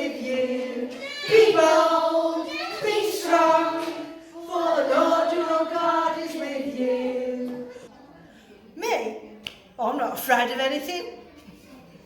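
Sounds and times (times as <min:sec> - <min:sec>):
children singing: 0:00.0 - 0:07.9.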